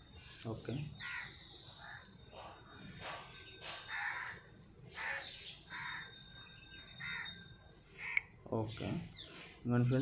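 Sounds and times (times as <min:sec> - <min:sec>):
crows cawing: 0:01.0 - 0:02.1, 0:03.9 - 0:06.2, 0:07.0 - 0:07.4, 0:08.0 - 0:08.3.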